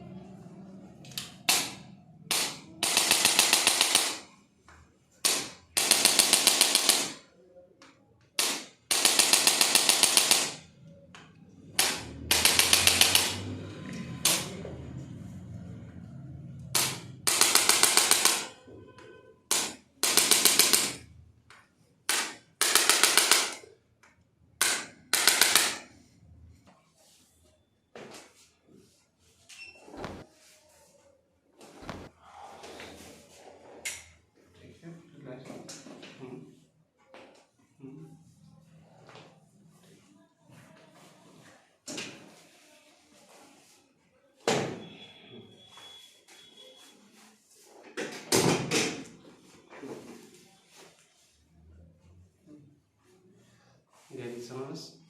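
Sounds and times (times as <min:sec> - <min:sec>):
percussive massager rapid tapping: 0:11.8 - 0:13.5, 0:31.8 - 0:32.1.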